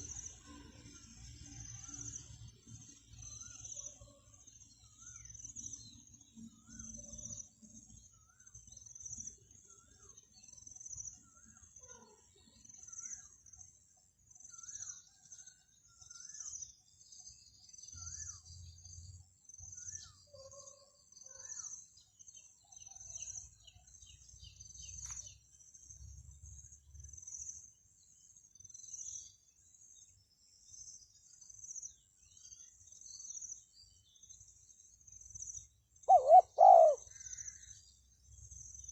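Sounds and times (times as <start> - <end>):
faint birdsong: 0.0 - 38.9
insects chirping: 30.8 - 38.9.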